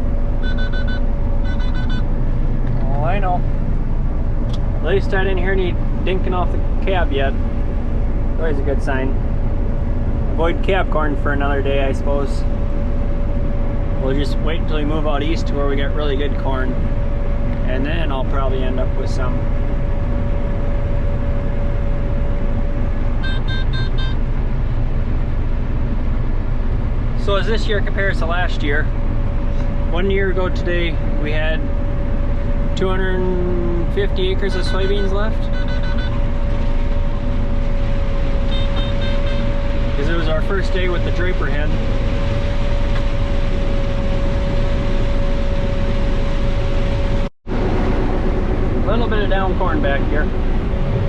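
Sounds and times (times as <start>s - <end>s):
combine harvester running: 0.0s - 51.0s
high whine: 0.0s - 51.0s
electronic alert beeps: 0.4s - 2.1s.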